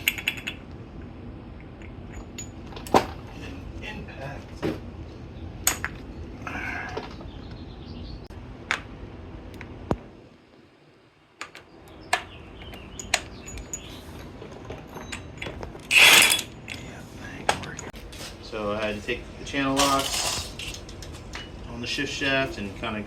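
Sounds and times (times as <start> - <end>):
metal tools clinking: 0.0 - 0.6, 1.7 - 3.0, 12.6 - 17.9, 19.6 - 21.7.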